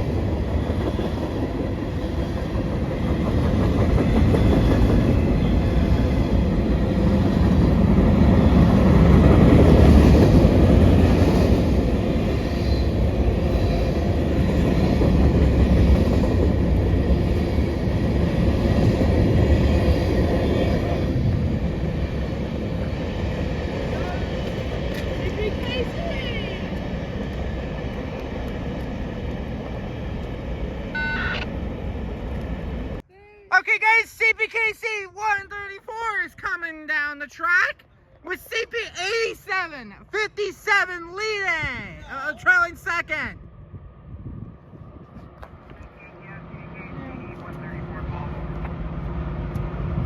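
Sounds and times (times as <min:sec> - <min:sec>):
freight train cars rolling past: 0:00.0 - 0:33.0.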